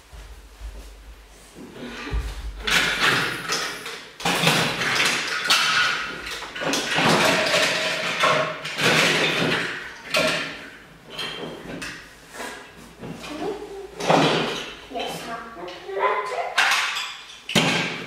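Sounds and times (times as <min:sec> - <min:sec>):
plastic bricks clattering: 0:02.7 - 0:09.8.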